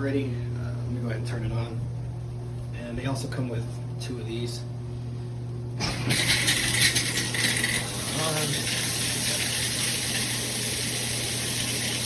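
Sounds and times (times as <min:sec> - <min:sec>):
shower spray hissing: 0:05.8 - 0:12.0.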